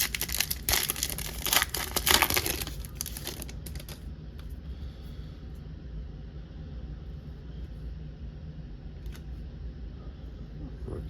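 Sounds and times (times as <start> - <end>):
plastic wrapper crinkling and tearing: 0.0 - 4.0.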